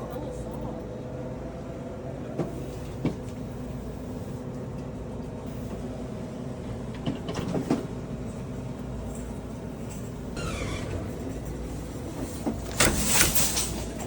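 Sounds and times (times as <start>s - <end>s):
low mechanical hum: 0.0s - 14.0s.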